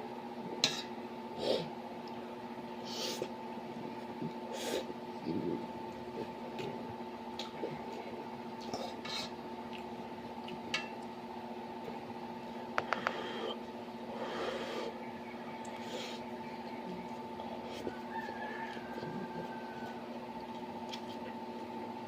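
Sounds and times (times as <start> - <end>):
steady hum: 0.0 - 22.0.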